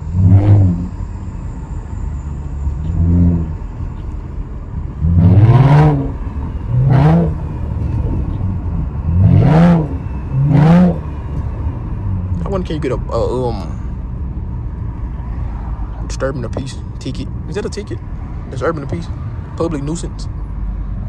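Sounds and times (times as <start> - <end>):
car engine revving: 0.0 - 14.9.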